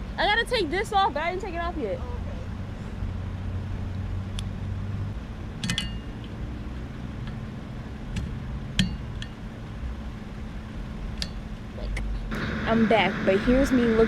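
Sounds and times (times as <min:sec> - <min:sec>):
low hum: 0:00.0 - 0:14.0
wiper blade parts clicking: 0:05.6 - 0:06.4.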